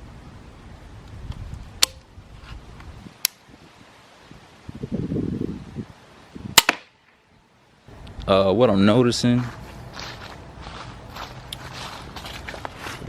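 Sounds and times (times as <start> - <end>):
low rustling: 7.8 - 13.0.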